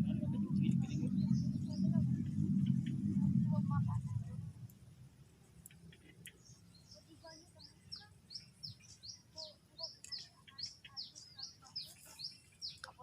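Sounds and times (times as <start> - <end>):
small bird chirping: 5.6 - 13.0.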